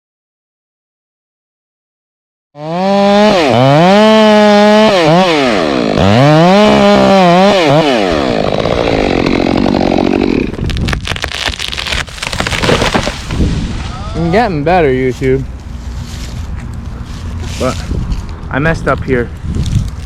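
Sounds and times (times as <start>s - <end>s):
chainsaw running at high revs: 2.6s - 10.6s
sharp cracks: 8.5s - 13.5s.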